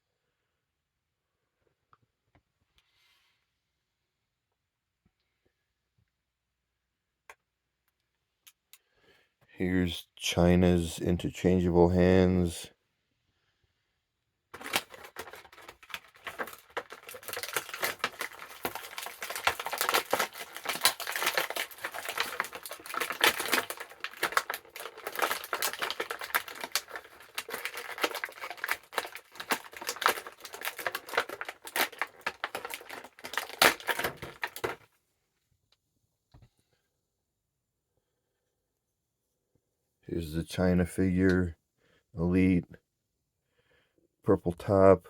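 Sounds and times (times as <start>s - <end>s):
plastic packaging crackling: 14.6s - 34.8s.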